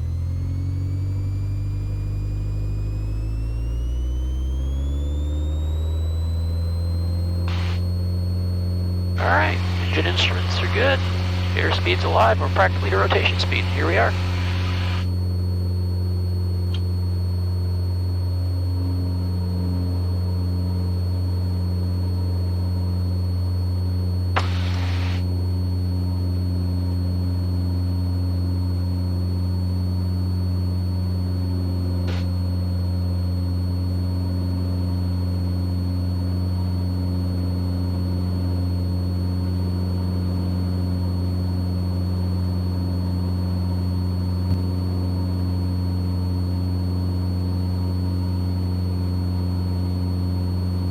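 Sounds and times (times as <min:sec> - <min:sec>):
aircraft engine and propeller droning: 0:00.0 - 0:07.7, 0:09.2 - 0:15.0
thin high whine: 0:00.0 - 0:18.6, 0:24.4 - 0:25.5.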